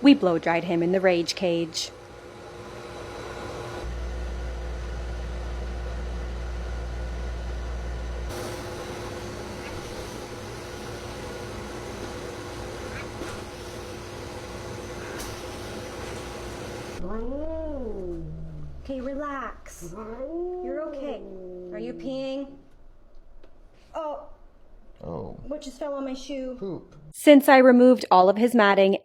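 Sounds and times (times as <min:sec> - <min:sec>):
motor hum: 0:01.9 - 0:23.7
blow dryer air rushing: 0:08.2 - 0:17.0
deep low rumble: 0:17.0 - 0:19.2.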